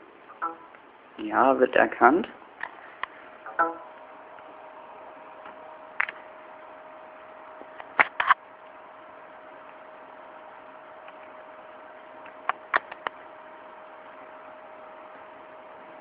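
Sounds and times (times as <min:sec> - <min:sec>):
steady hum and hiss: 0:00.0 - 0:16.0
sharp clicks: 0:12.2 - 0:13.2.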